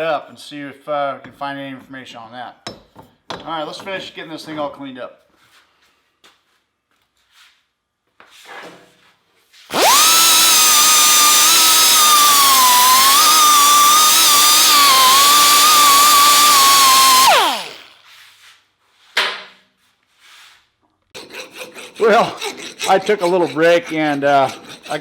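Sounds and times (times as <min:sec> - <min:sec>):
power tool motor whining: 0:09.7 - 0:18.0.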